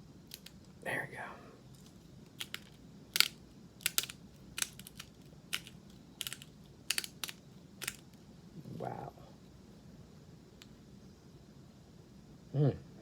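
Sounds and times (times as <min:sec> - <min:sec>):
spice grinder crunching clicks: 0:01.8 - 0:08.1.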